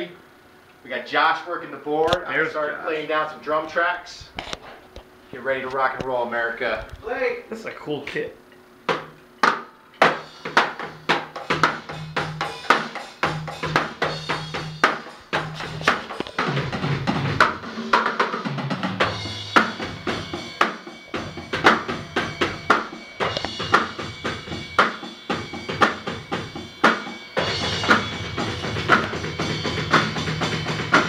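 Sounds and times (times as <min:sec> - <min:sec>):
drum kit rock beat: 0:08.8 - 0:31.0.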